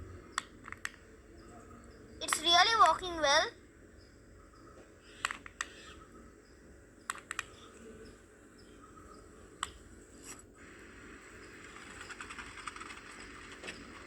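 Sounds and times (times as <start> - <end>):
plastic clicks: 5.2 - 5.7, 7.1 - 7.5
faint rapid clicking rattle: 11.5 - 14.0.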